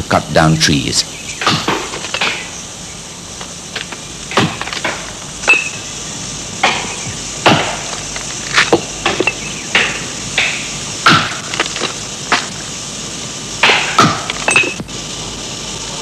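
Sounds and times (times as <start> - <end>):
insects hissing: 0.0 - 16.0
axe chopping tree trunk: 6.6 - 7.9, 8.6 - 11.7, 13.6 - 14.7.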